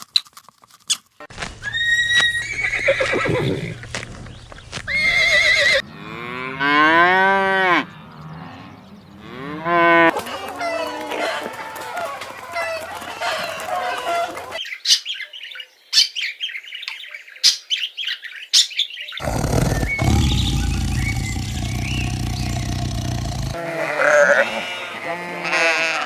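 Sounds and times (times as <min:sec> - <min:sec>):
high animal chirps: 0:19.2 - 0:23.6
low loud animal call: 0:19.2 - 0:24.7.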